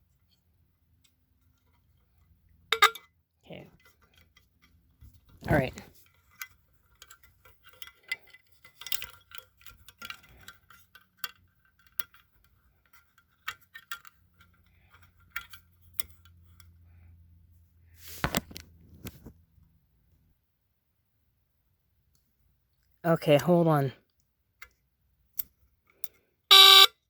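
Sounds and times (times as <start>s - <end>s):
low alarm buzz: 26.5s - 26.9s.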